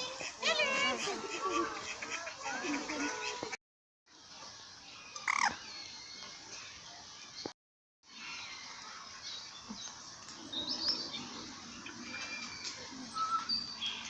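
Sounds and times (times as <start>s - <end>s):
birds chirping and whistling: 8.1s - 14.0s.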